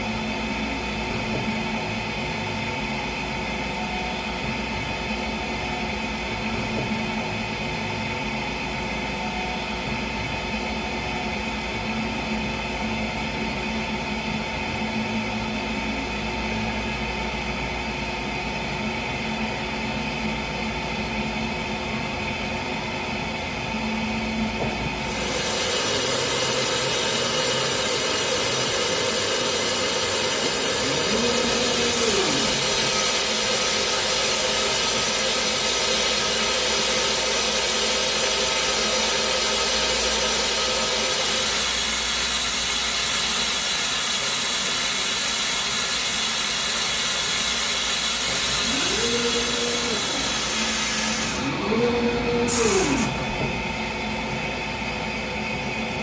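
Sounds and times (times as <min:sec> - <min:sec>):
motor whine ramping in pitch: 0:24.7 - 0:54.0
workshop machinery hiss: 0:24.7 - 0:54.0.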